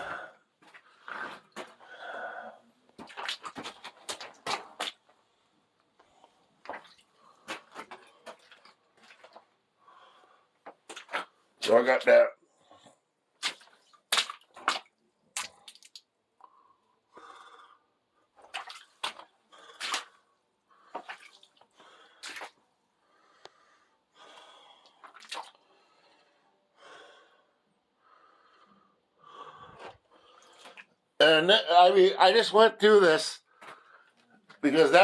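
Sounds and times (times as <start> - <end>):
soft water noise: 0.0 - 11.8, 12.6 - 27.1
water drops splashing: 13.4 - 16.1.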